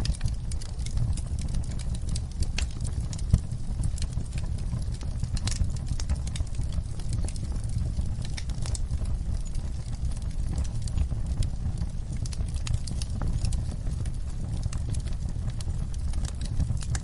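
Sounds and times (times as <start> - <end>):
crackles and pops of burning logs: 0.0 - 17.0
low rumble of flames: 0.0 - 17.0.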